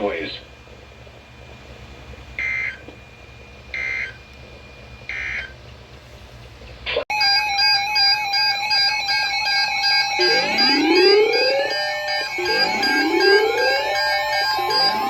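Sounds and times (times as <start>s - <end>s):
electronic music with synthesizer: 7.2s - 15.0s.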